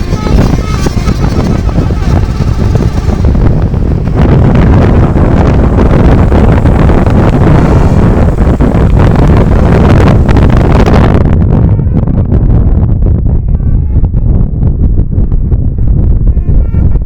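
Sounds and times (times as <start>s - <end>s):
bus engine rumble: 0.0s - 12.6s
wind buffeting microphone: 0.0s - 17.0s.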